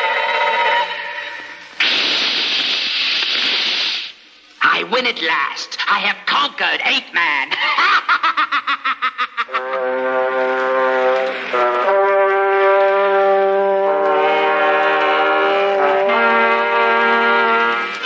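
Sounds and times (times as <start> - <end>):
dramatic brass chords: 9.6 - 18.0.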